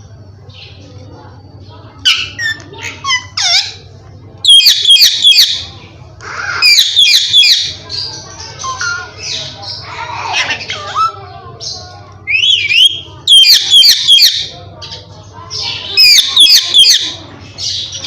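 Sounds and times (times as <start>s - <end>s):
parakeet squawking: 2.0s - 3.8s, 4.5s - 7.8s, 8.4s - 14.5s, 15.6s - 18.0s.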